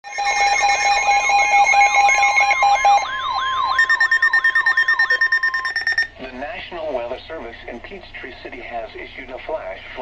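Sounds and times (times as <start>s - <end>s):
rapid beeping: 0.0s - 6.2s
falling siren-like sweep: 0.8s - 6.0s.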